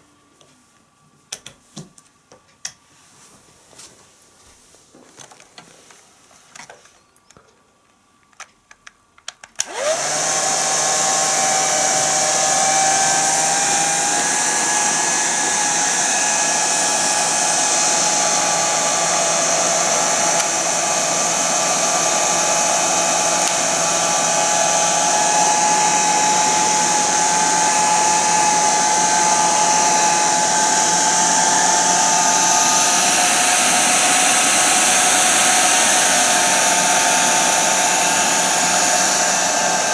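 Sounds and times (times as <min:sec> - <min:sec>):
hair dryer running: 0:09.6 - 0:39.9.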